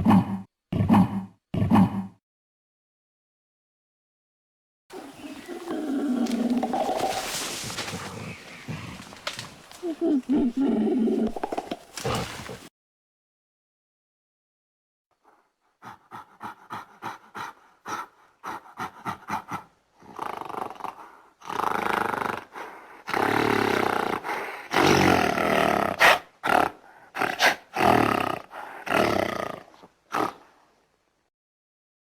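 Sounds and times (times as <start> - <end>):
gorilla roaring: 4.9 - 12.7, 18.8 - 30.4
gorilla short calls: 4.9 - 12.7.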